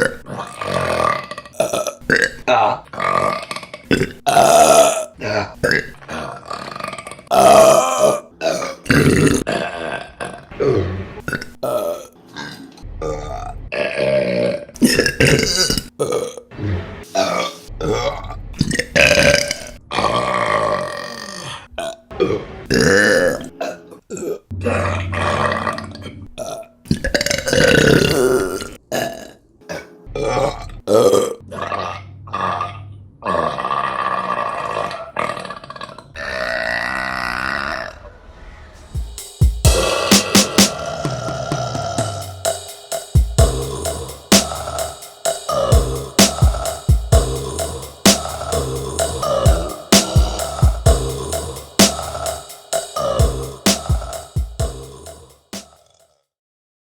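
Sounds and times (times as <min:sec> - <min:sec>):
women burping: 0:07.3 - 0:10.3.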